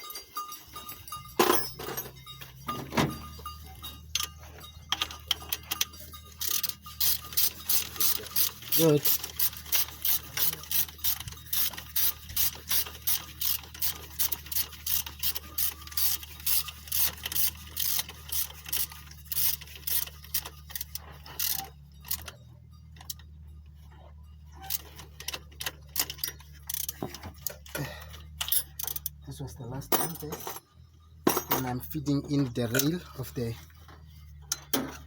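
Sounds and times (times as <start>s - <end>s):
ratchet wrench clicking: 4.9s - 22.4s, 24.6s - 27.6s, 28.4s - 29.2s.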